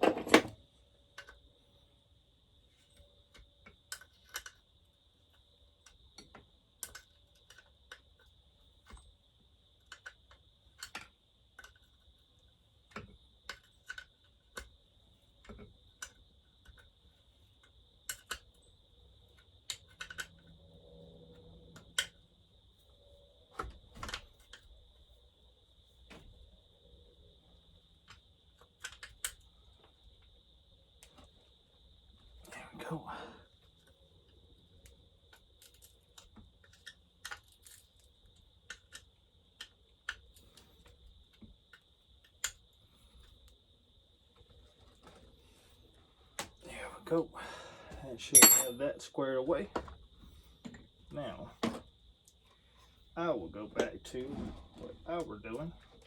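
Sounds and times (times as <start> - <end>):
hand tools clicking on parts: 48.3 - 48.8.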